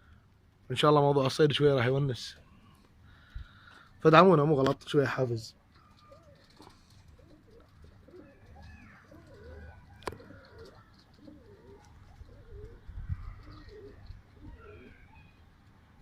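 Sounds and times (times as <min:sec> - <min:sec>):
pigeons cooing: 0:05.6 - 0:16.0.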